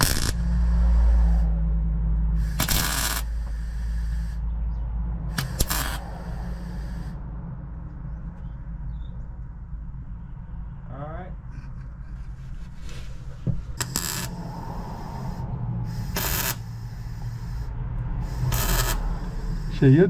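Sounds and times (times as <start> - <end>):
welding crackling hiss: 0.0 - 1.5, 2.4 - 4.4, 5.4 - 7.2, 13.8 - 20.0
low hum: 0.0 - 20.0.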